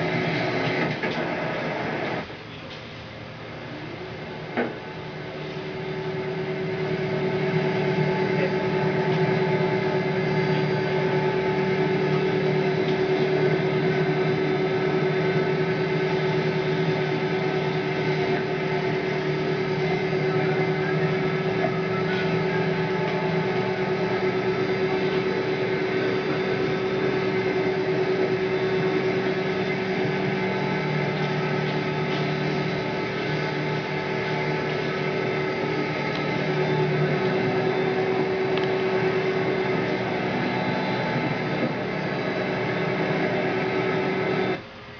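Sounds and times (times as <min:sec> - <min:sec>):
machining center humming and whining: 0:00.0 - 0:44.9.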